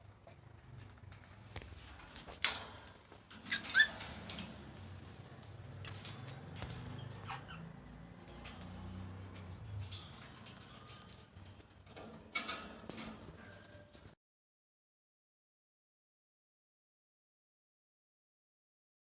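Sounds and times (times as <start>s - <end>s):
faint clicks and shuffling: 0.0s - 14.2s
cockatoo calls: 3.5s - 4.0s.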